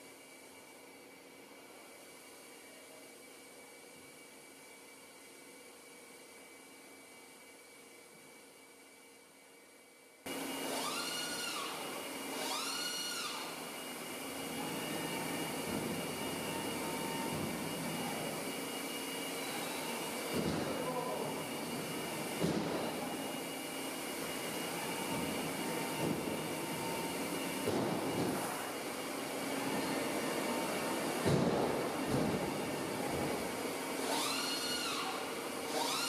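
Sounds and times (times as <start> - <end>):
mechanical running noise: 0.0 - 36.0
machine servo whines: 10.3 - 36.0.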